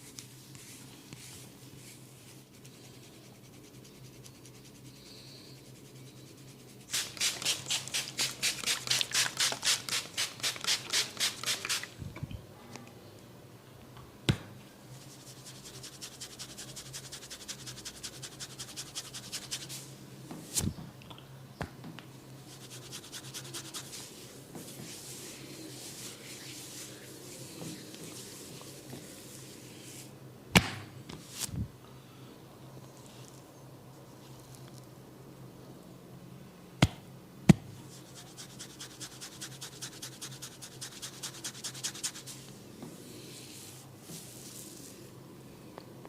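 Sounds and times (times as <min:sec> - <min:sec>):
comb scratching through hair: 0:05.6 - 0:11.9, 0:15.0 - 0:19.9, 0:22.5 - 0:30.1, 0:37.9 - 0:42.5.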